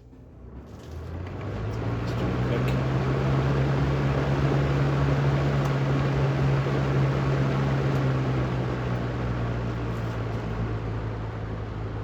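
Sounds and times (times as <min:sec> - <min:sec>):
electric fan running: 0:02.7 - 0:10.7.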